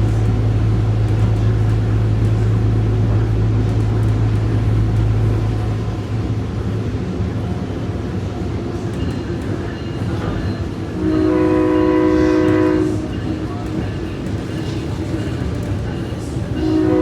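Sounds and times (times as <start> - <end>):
train rumbling: 0.0 - 17.0
train horn blast: 11.0 - 13.4, 16.6 - 17.0.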